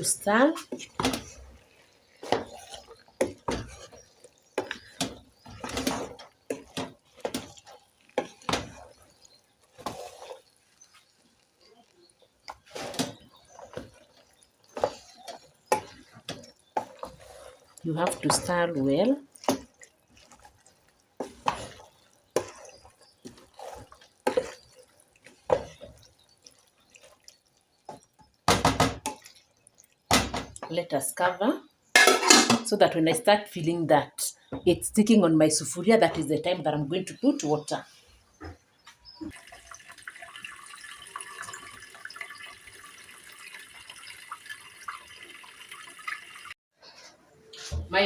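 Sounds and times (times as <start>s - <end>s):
spoon stirring beans in a pot: 0.0s - 46.1s
small pops and crackles: 0.7s - 17.9s, 19.3s - 30.6s.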